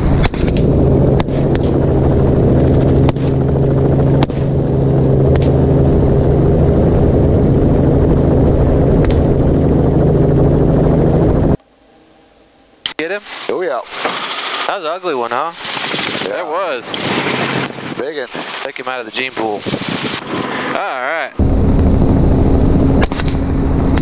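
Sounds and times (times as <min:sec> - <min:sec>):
helicopter rotor and engine drone: 0:00.0 - 0:24.0
sharp clicks: 0:05.3 - 0:05.6, 0:09.0 - 0:09.2.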